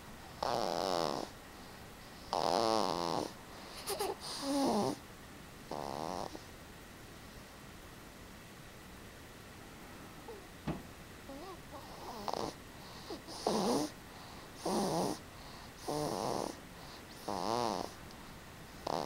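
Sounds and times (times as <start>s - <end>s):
rhythmic snoring: 0.4s - 1.4s, 2.2s - 3.4s, 4.2s - 5.0s, 5.7s - 6.4s, 11.3s - 18.0s, 18.8s - 19.0s.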